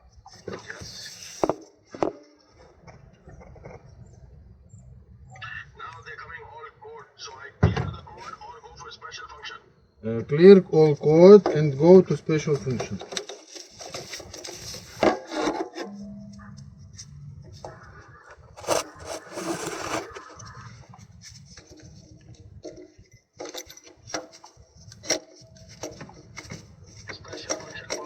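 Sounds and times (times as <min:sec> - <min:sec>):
rubbing and scraping: 0:00.2 - 0:01.7, 0:12.6 - 0:22.3.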